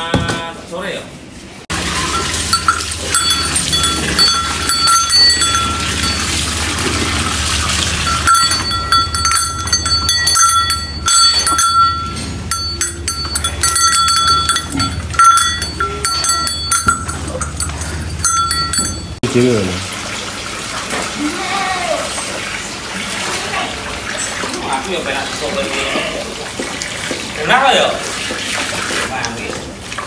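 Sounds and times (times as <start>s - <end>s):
steady low hum: 1.7s - 19.2s
livestock bells clanking: 1.7s - 19.3s.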